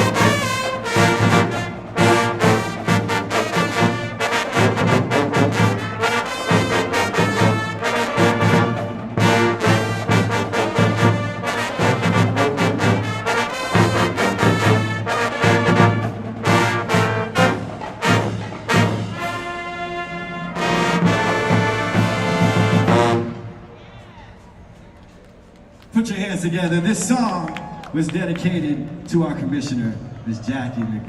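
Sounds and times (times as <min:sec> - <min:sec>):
pep band brass and drums: 0:00.0 - 0:24.7.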